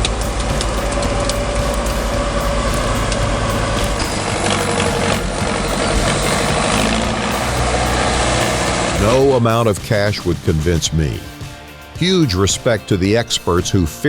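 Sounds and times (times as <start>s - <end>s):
heavy vehicle engine running: 0.0s - 9.4s.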